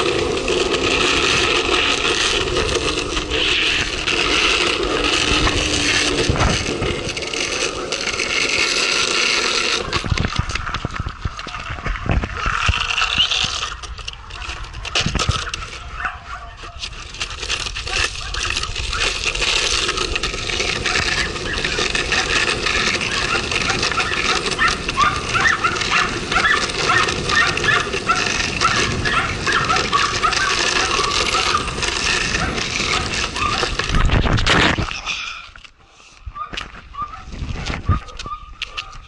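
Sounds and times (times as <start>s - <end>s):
longboard wheels rolling on pavement: 0.0s - 39.0s
dog whining and yelping: 23.2s - 31.6s, 37.9s - 38.9s.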